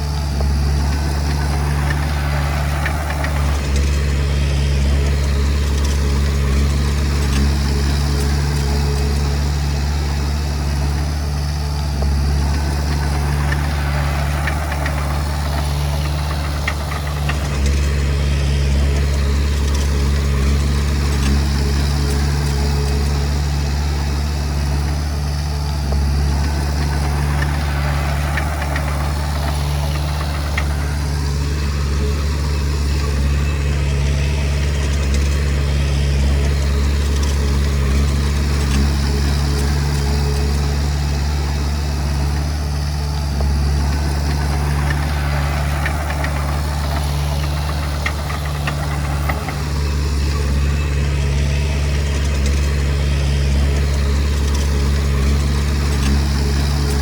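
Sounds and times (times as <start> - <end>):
bulldozer diesel engine running: 0.0 - 57.0
faint metal clicks and clanks: 43.4 - 52.7.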